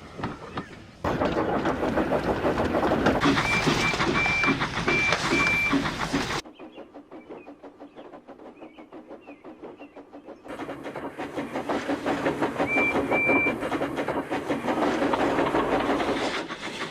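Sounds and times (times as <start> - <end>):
rail clatter: 0.1 - 16.9
steam locomotive chuffing: 1.0 - 16.9.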